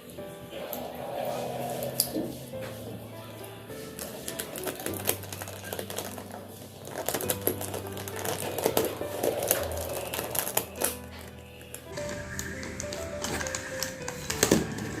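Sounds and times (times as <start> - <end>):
background music: 0.0 - 15.0
plastic puzzle pieces clicking: 6.9 - 11.9.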